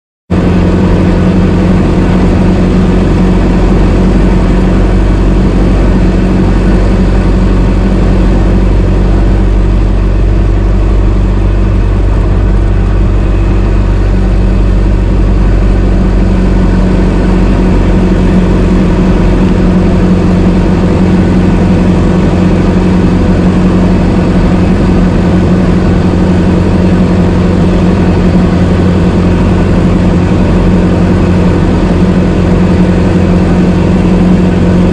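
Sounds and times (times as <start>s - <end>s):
car engine idling: 0.3s - 34.9s.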